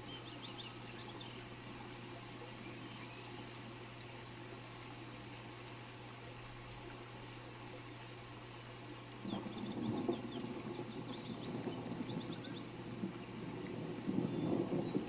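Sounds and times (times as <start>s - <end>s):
rain hiss: 0.0s - 15.0s
bird chirping faintly: 9.2s - 12.7s
low rumble of thunder: 9.2s - 15.0s.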